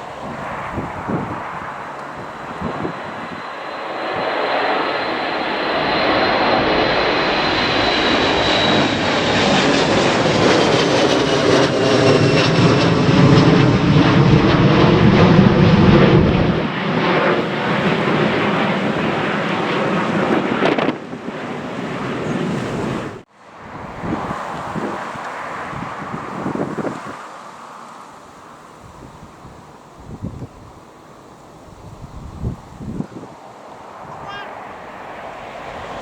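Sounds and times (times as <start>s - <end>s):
high engine whine: 0.0s - 19.3s
wind buffeting microphone: 0.0s - 21.4s, 22.0s - 27.3s, 28.7s - 30.9s, 31.5s - 36.0s
airliner passing close by: 0.0s - 36.0s.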